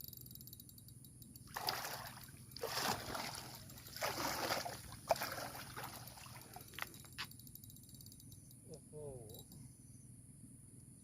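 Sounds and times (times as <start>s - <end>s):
fish splashing in water: 1.5s - 6.9s.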